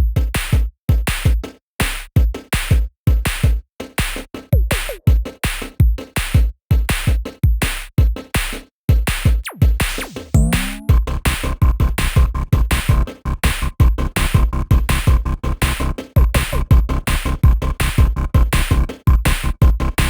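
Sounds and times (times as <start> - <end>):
drum machine beat: 0.0 - 20.0
electronic music: 9.4 - 20.0.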